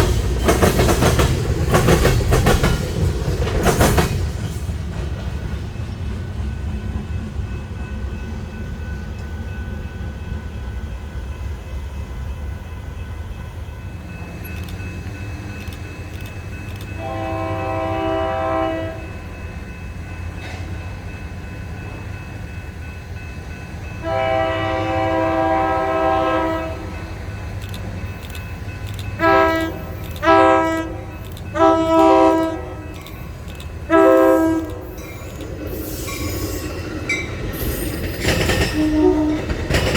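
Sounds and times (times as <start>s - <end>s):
train rumbling: 0.0s - 39.9s
locomotive air horn blasts: 17.0s - 19.1s, 24.0s - 27.1s, 29.2s - 33.0s, 33.9s - 35.0s, 38.8s - 39.4s.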